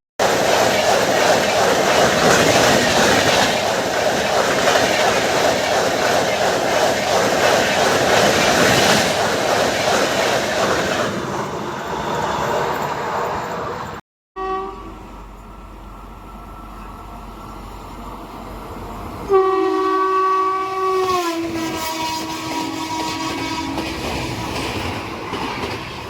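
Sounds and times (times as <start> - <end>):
train wheels on track: 0.2 - 14.0, 14.8 - 26.0
short train horn toot: 14.4 - 15.1, 19.3 - 23.8
locomotive air horn: 14.4 - 15.2, 19.2 - 23.9.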